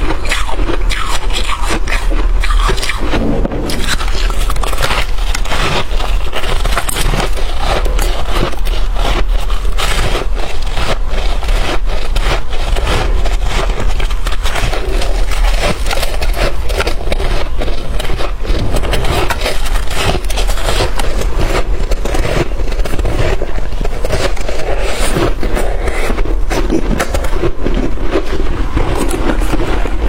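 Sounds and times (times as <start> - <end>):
chewing crunchy ice: 0.0 - 3.1, 4.2 - 30.0.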